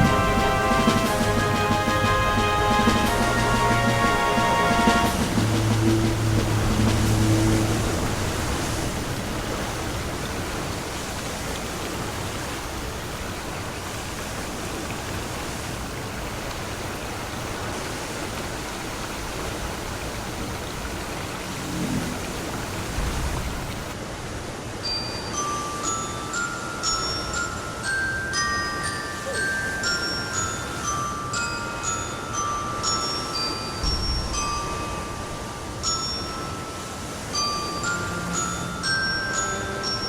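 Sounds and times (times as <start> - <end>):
low held music notes: 0.0 - 9.6
steady rushing noise: 0.0 - 11.6, 13.8 - 24.1
high chime-like notes: 24.8 - 40.0.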